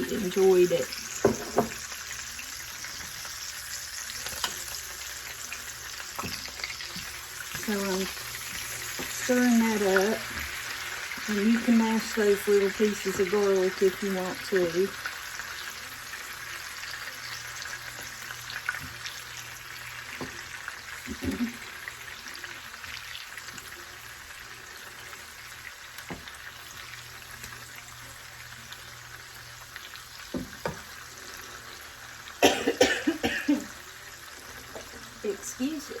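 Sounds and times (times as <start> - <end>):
butter and oil sizzling in a pan: 0.0 - 36.0
person coughing: 32.4 - 33.7.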